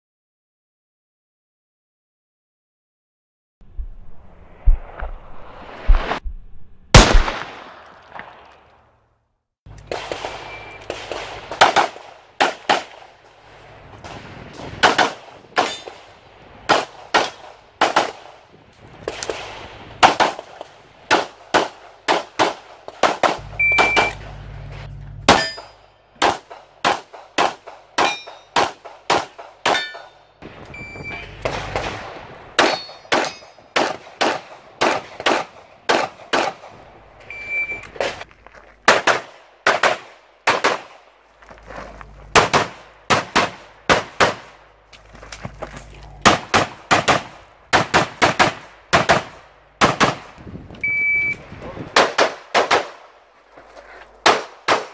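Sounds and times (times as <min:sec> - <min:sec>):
pistol shots: 0:06.9 - 0:08.5, 0:09.8 - 0:13.2, 0:14.0 - 0:16.1, 0:16.7 - 0:18.4, 0:19.1 - 0:24.2, 0:25.3 - 0:30.2, 0:31.1 - 0:36.8, 0:38.9 - 0:41.0, 0:42.3 - 0:44.6, 0:46.2 - 0:50.4, 0:51.9 - 0:53.1, 0:54.2 - 0:54.9
bullets ringing on steel targets: 0:15.6 - 0:16.0, 0:25.3 - 0:26.0, 0:28.0 - 0:28.8, 0:29.6 - 0:31.3, 0:32.6 - 0:33.8.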